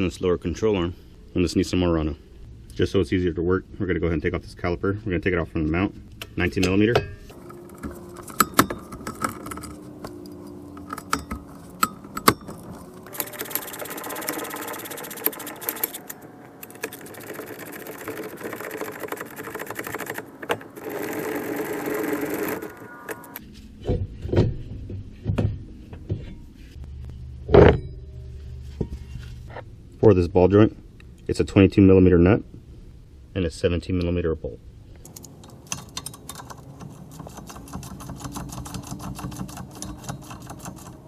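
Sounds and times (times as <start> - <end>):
metal parts clunking: 6.6 - 18.5
cordless power wrench spinning: 7.3 - 23.4.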